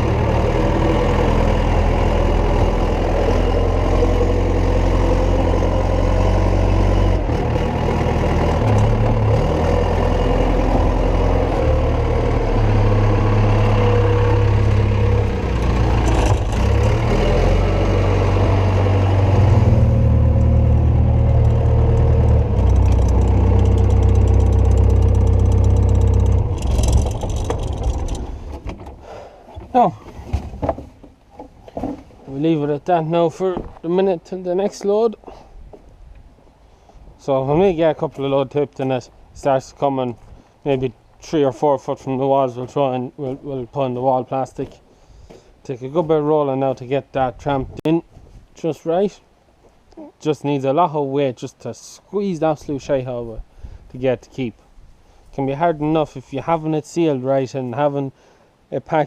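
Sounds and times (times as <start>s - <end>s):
diesel engine revving: 0.0s - 29.3s.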